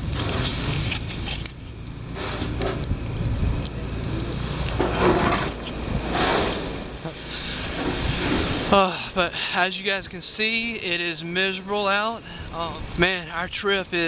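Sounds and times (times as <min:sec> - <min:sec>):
wind buffeting microphone: 0:02.5 - 0:09.1.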